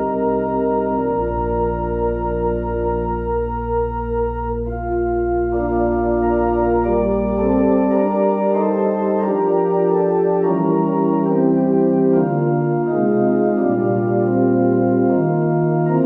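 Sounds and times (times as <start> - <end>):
church organ chords: 0.0 - 16.0
deep sustained organ bass note: 0.0 - 16.0.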